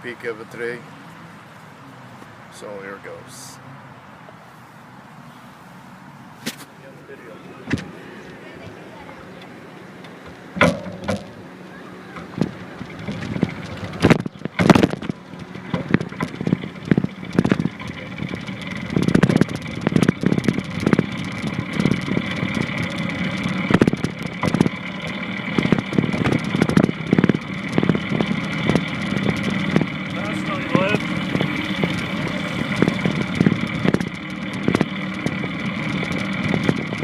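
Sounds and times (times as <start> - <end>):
skateboard wheels rumbling: 7.6 - 37.0
paddle knocking on ground: 10.2 - 11.4, 12.2 - 18.0.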